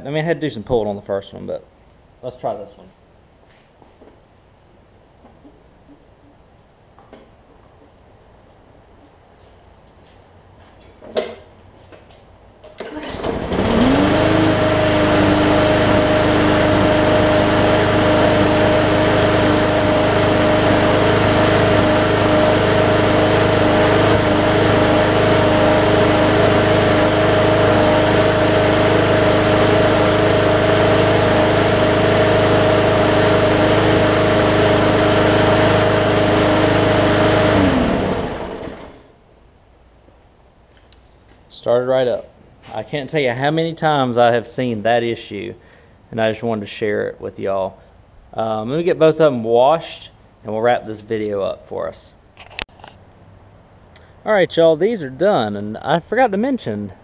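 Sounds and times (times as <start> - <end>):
lawn mower engine running: 12.6 - 39.2.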